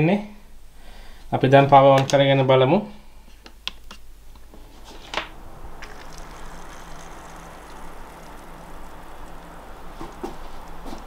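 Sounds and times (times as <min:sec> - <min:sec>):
computer fans humming: 0:04.2 - 0:11.0.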